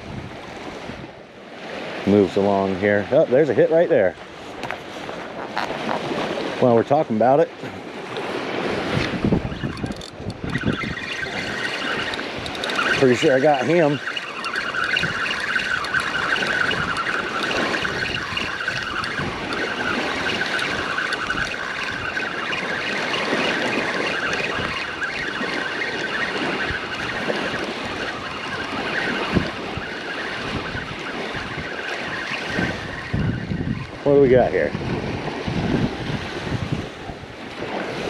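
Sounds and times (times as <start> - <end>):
ocean surf: 0.0 - 38.0
wind on microphone: 0.0 - 38.0
high-pitched whine: 9.4 - 34.0.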